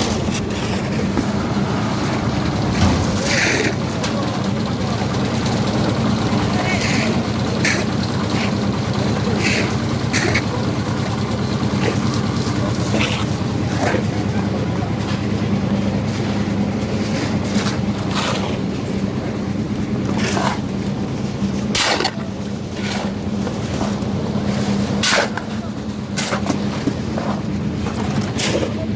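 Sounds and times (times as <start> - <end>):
sharp knocks and clanks: 0.0 - 14.0
engine running steadily: 0.0 - 28.9.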